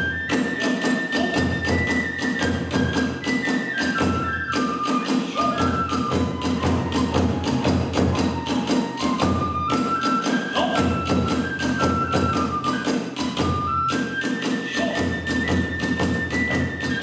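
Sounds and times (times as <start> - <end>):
bamboo flute melody: 0.0 - 17.0
drums beating: 0.0 - 17.0.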